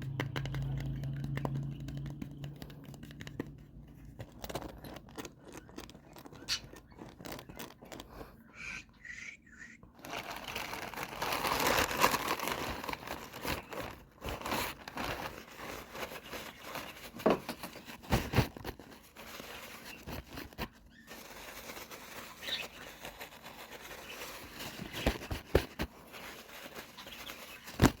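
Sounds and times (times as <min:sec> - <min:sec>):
fingernails tapping on packaging: 0:00.0 - 0:08.0
crinkly rustle: 0:00.2 - 0:08.4, 0:10.0 - 0:28.0.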